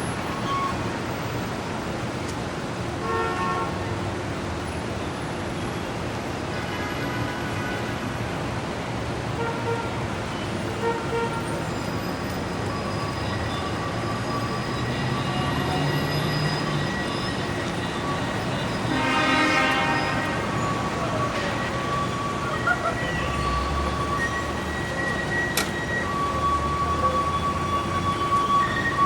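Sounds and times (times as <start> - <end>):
street traffic noise: 0.0 - 29.0
vehicle horn toots: 18.7 - 20.7.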